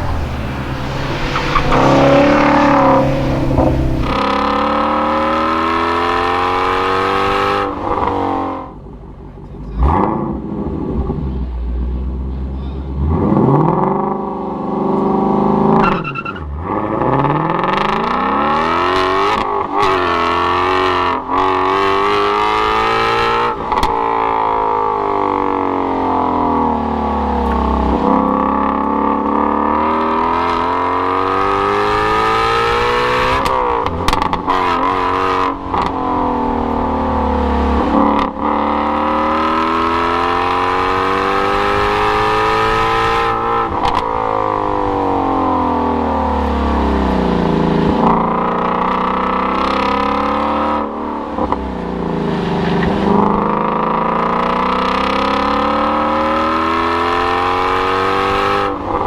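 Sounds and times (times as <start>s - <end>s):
gear changes: 0.0s - 4.3s
car engine revving hard: 0.0s - 8.7s, 16.6s - 59.0s.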